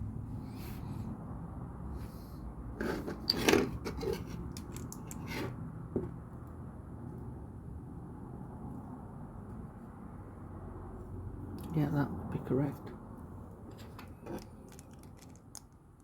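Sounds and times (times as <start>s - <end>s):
plastic bricks clicking together: 4.5s - 5.3s, 14.3s - 15.8s.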